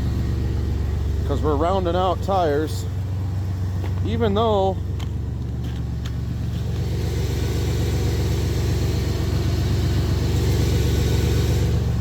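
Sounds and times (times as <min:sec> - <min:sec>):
pickup engine drone: 0:00.0 - 0:12.0.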